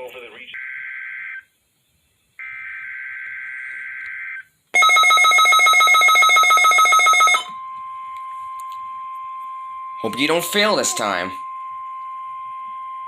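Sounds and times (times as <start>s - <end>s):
steady warning alarm tone: 4.2s - 13.0s.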